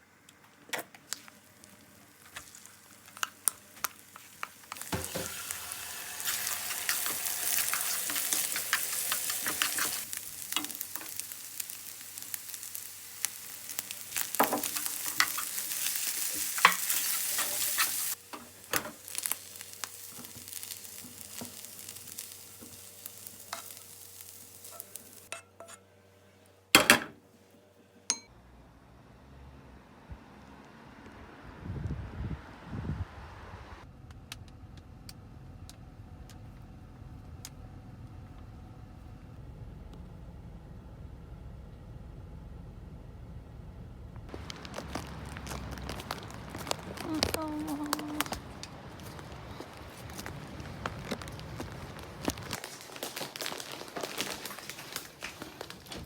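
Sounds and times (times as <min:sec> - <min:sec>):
food sizzling in a frying pan: 0:01.1 - 0:25.3
utensil stirring in a pan: 0:01.1 - 0:25.8.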